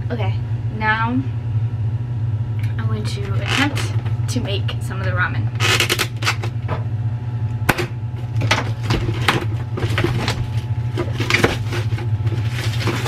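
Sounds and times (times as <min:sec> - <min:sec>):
steady low hum: 0:00.0 - 0:13.0
plastic packaging being handled: 0:08.2 - 0:13.0.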